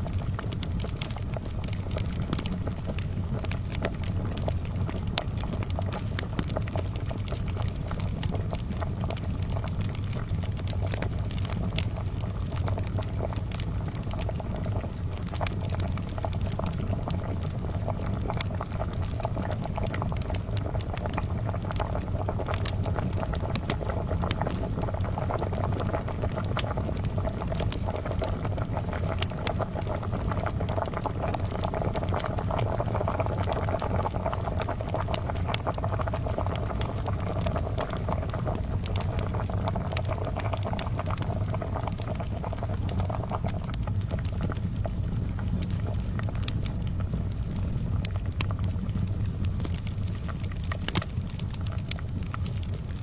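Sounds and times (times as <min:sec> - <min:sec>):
charcoal fire crackling: 0:00.0 - 0:53.0
kettle boiling: 0:00.0 - 0:53.0.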